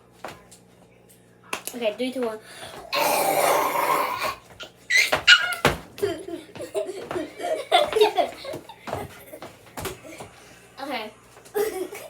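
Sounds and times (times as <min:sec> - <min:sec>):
laughter: 0:06.0 - 0:09.5, 0:11.5 - 0:12.0.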